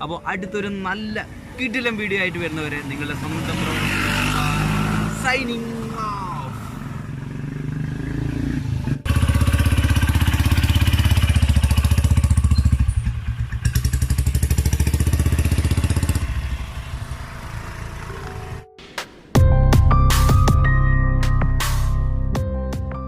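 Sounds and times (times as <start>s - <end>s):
engine running: 6.6s - 18.7s.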